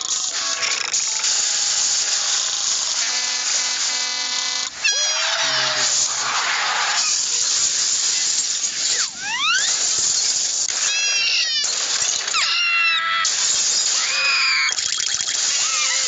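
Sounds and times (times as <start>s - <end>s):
high squeaky cartoon cries: 4.8s - 6.0s, 8.9s - 9.9s, 10.7s - 16.0s
loud hiss: 5.2s - 10.9s.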